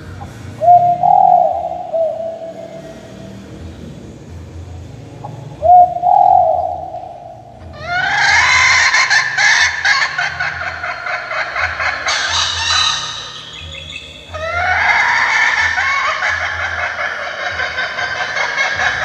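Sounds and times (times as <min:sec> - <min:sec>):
recorded chicken calls: 0:05.6 - 0:19.0.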